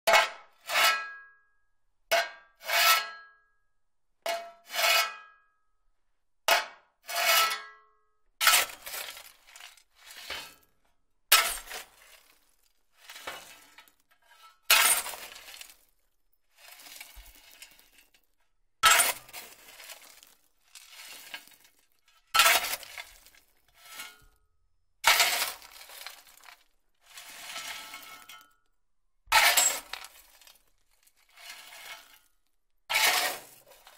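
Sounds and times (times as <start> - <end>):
metal shovel scraping through ash: 0.1 - 1.2, 4.3 - 5.3, 7.0 - 7.7, 8.4 - 18.2, 18.8 - 24.4, 25.0 - 28.6, 29.3 - 33.9.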